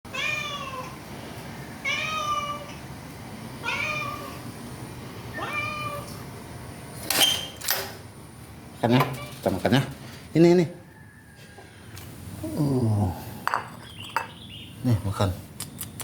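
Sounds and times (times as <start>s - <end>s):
cat meowing: 0.1s - 1.0s, 1.8s - 2.8s, 3.6s - 4.4s, 5.3s - 6.2s.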